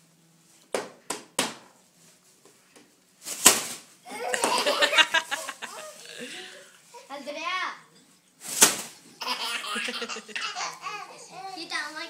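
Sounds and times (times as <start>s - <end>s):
baby laughing: 4.1s - 6.1s, 9.2s - 11.6s
bag crinkling and rustling: 4.8s - 7.0s.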